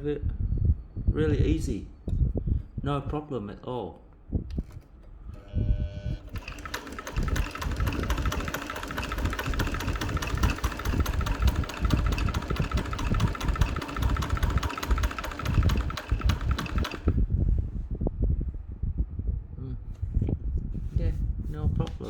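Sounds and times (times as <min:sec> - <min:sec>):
sewing machine running: 0:05.4 - 0:17.2.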